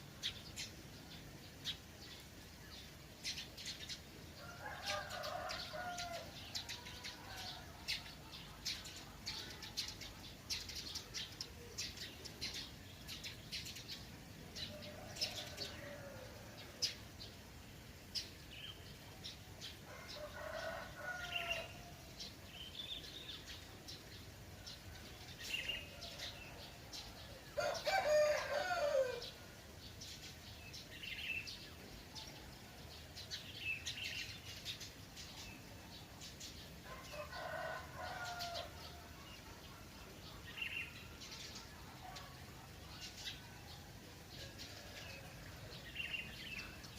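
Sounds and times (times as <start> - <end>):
small songbirds chirping: 0.0 - 46.9
roosters crowing: 4.4 - 7.8, 14.7 - 16.8, 19.9 - 22.0, 27.6 - 29.4, 36.8 - 39.1.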